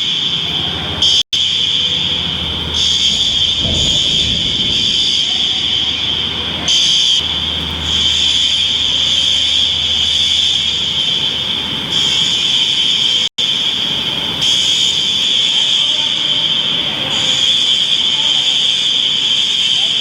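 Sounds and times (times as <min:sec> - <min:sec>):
fire alarm high-pitched tone: 0:00.0 - 0:20.0
low hum: 0:00.8 - 0:12.4.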